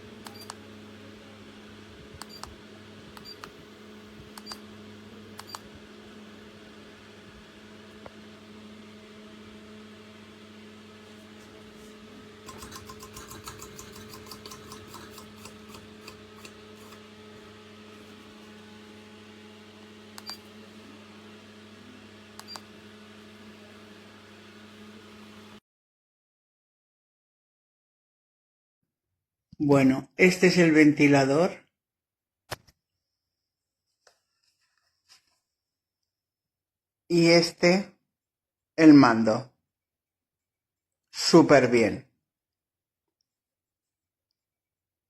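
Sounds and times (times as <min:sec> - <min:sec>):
low electrical hum: 0:00.0 - 0:25.6.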